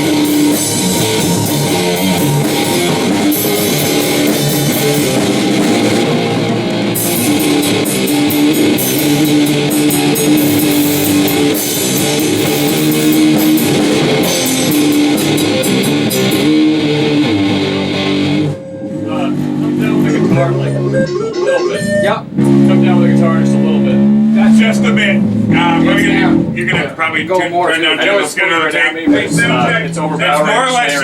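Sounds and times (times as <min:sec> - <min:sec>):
drum kit with cymbals: 0:00.0 - 0:18.3
electric guitar sustained notes: 0:00.0 - 0:26.7.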